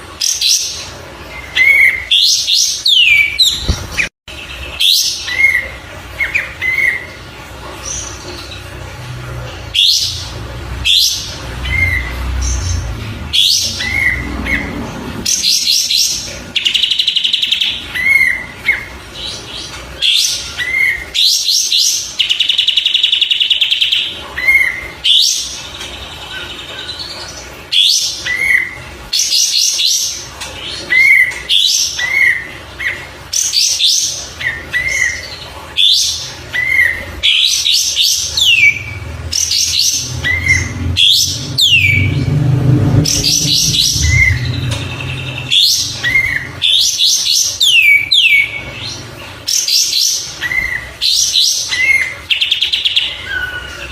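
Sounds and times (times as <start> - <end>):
low rumble: 10.2 - 15.5, 38.8 - 46.6
songbird singing trills: 43.0 - 48.6.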